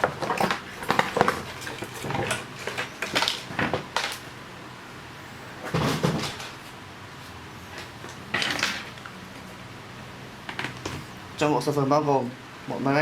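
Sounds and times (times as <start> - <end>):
packaging scraping and rustling: 0.0 - 4.2.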